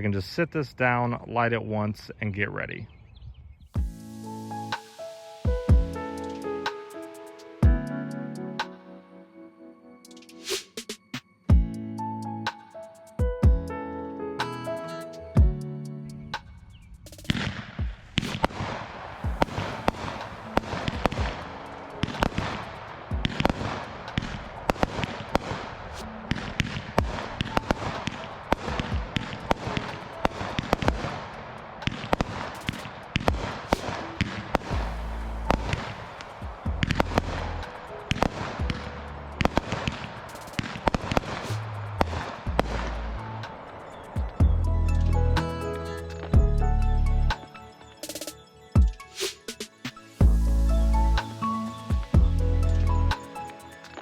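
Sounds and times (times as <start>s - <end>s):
background music: 3.8s - 54.0s
firework bangs and crackles: 17.2s - 44.4s.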